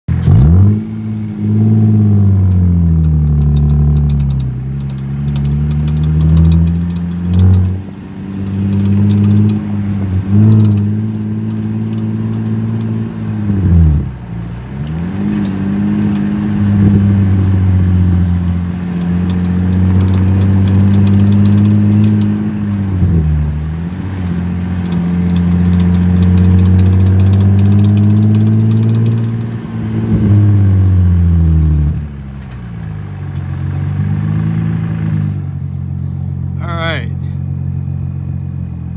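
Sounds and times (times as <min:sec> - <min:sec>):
car engine running: 0:00.1 - 0:38.9
rapid light clicking: 0:02.5 - 0:07.8, 0:24.7 - 0:30.3.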